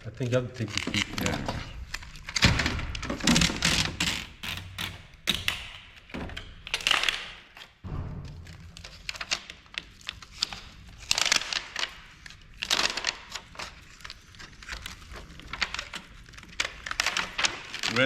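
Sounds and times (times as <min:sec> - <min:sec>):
scraping crinkling rustles: 0:00.0 - 0:04.9, 0:08.9 - 0:18.0.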